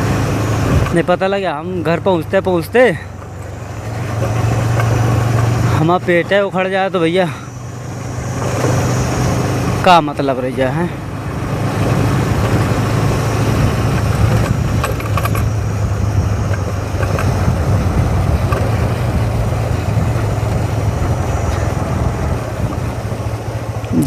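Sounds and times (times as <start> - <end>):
motorcycle engine running: 0.0 - 24.0
road and wind noise: 0.0 - 24.0
light rattles: 0.6 - 24.0.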